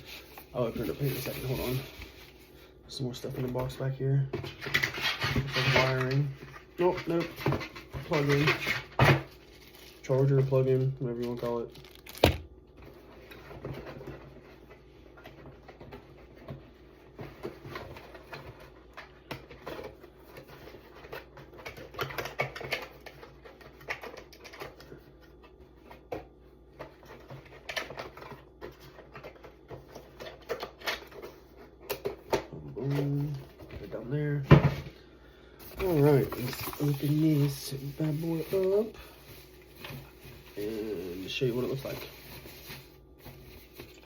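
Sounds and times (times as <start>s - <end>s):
packaging rustling: 4.5s - 12.5s, 35.6s - 44.0s.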